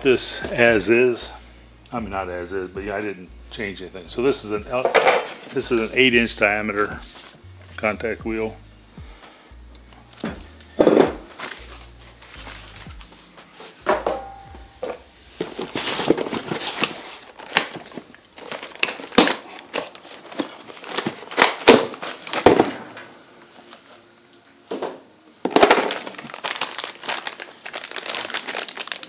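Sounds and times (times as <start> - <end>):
packing material crinkling: 4.3 - 8.2, 10.1 - 13.8, 14.8 - 24.0, 25.4 - 29.0.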